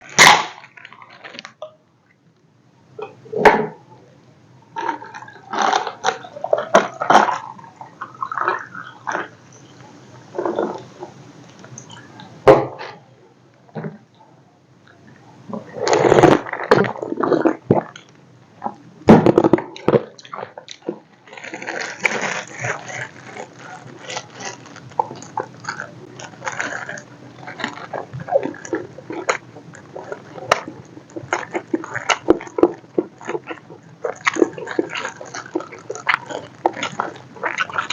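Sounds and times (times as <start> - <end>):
eating and chewing: 0.0 - 1.8, 4.7 - 37.9
mouth clicks: 14.9 - 37.9
lip smacks: 20.2 - 37.9.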